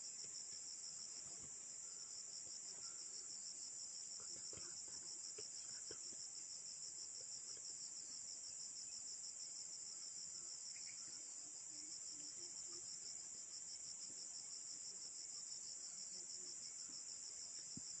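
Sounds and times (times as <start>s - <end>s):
insect chorus trilling: 0.0s - 18.0s
faint murmurs: 4.2s - 6.2s.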